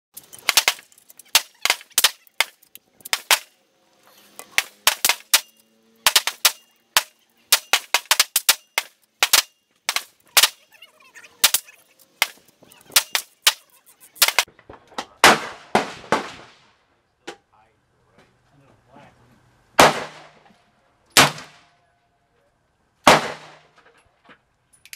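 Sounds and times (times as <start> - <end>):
sharp cracks: 0.2 - 3.7, 4.4 - 16.8, 19.8 - 20.5, 21.1 - 21.8, 23.0 - 23.8.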